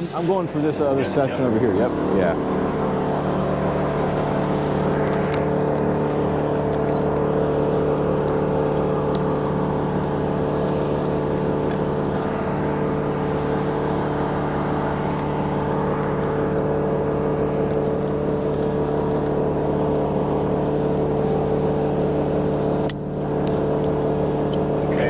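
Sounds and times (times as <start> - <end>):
crane engine running: 0.0 - 25.0.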